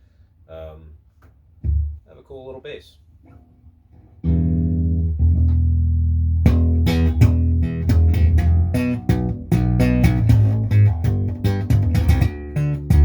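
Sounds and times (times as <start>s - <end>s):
electric bass notes: 4.2s - 13.0s.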